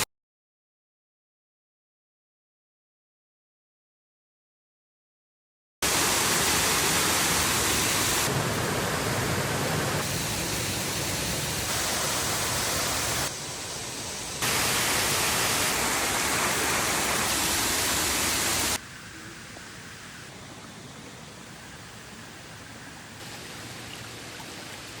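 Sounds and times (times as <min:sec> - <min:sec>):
waterfall rushing: 0:05.8 - 0:18.8.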